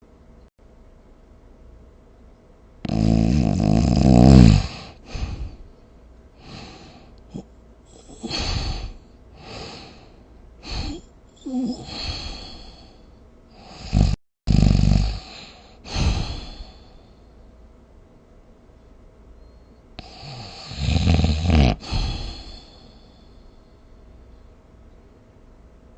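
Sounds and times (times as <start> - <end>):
person snoring: 2.8 - 5.6, 6.4 - 17.1, 20.0 - 23.3
person breathing: 4.4 - 5.8, 6.4 - 14.2, 15.0 - 17.5, 21.7 - 24.4.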